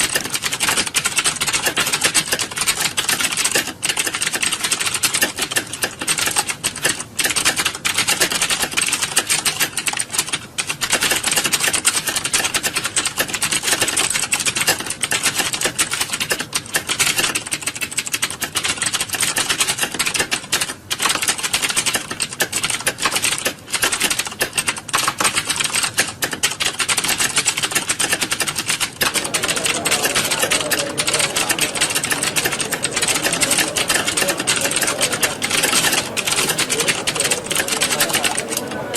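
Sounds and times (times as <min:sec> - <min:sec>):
many keyboards clattering: 0:28.4 - 0:38.9.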